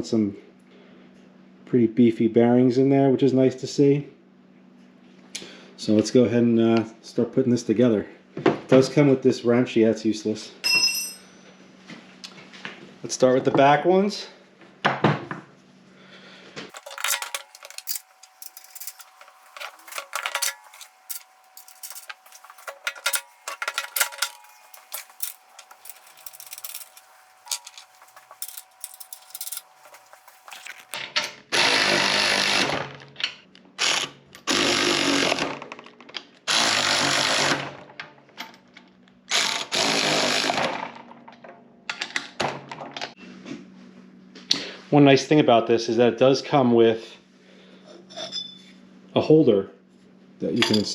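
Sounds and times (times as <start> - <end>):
metal nuts and washers clinking: 16.7 - 31.0.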